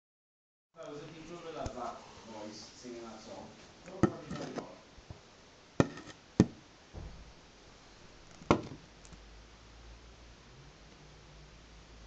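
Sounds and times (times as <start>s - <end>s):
sharp knocks: 5.8s - 7.3s, 8.5s - 8.8s.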